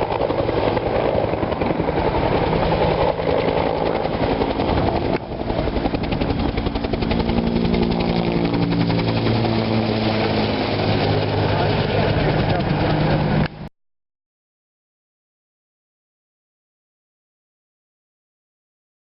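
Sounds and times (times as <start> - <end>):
engine drone: 0.0 - 13.7
helicopter rotors chopping: 0.0 - 13.7.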